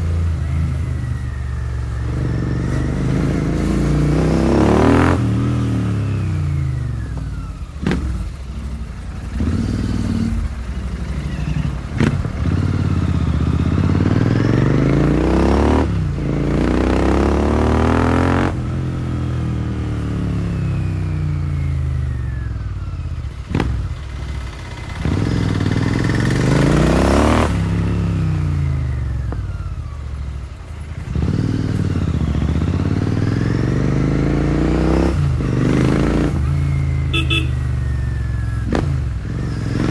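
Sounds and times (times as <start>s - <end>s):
motorcycle engine revving through gears: 0.0s - 39.9s
exhaust cracks: 2.0s - 13.2s.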